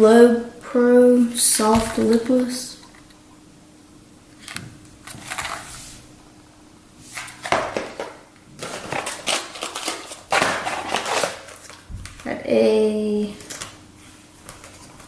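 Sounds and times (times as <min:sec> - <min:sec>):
plastic packaging crinkling: 0:07.2 - 0:12.4, 0:13.4 - 0:13.8.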